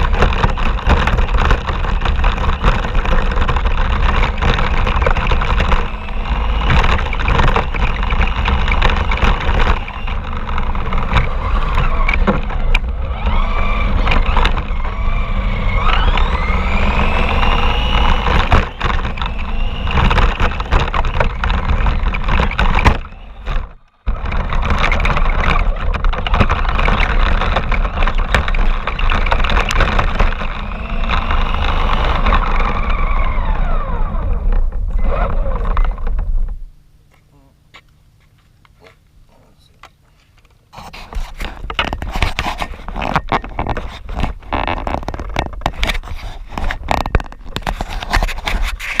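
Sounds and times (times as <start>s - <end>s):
clattering rattle: 0.0s - 33.0s, 41.1s - 49.0s
toy car motor whining: 0.0s - 36.2s
steady rumble: 0.0s - 49.0s.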